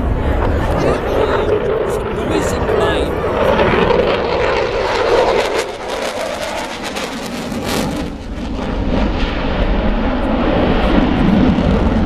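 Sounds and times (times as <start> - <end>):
fighter jet rushing roar: 0.0 - 12.0.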